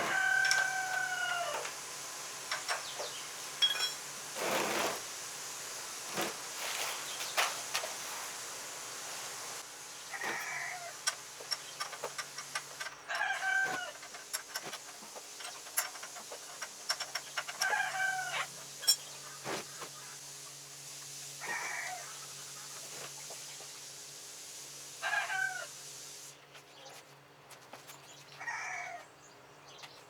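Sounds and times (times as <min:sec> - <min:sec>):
chicken calling: 0:00.0 - 0:01.7, 0:10.1 - 0:11.0, 0:13.1 - 0:14.1, 0:17.5 - 0:18.6, 0:21.4 - 0:22.8, 0:25.0 - 0:25.8, 0:28.4 - 0:29.0.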